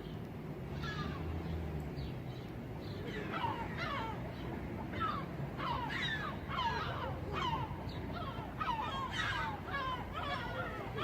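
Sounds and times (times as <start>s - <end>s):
seagulls calling: 3.0s - 11.0s.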